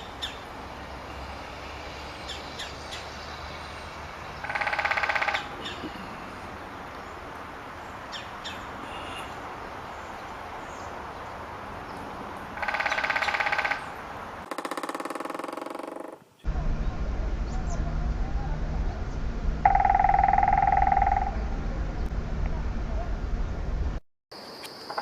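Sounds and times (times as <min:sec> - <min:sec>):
woodpecker drumming on wood: 0:04.4 - 0:05.6, 0:12.6 - 0:16.3, 0:19.7 - 0:21.5.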